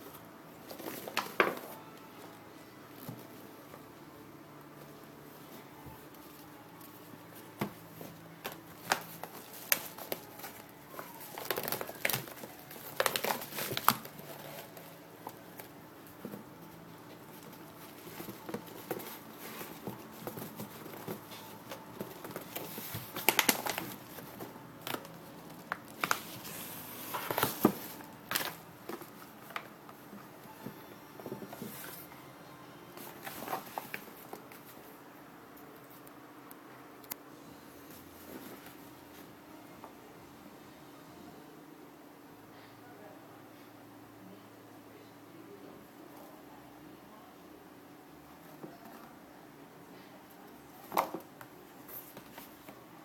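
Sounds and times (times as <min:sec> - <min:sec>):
packaging crinkling: 0:08.4 - 0:15.7, 0:17.3 - 0:29.7.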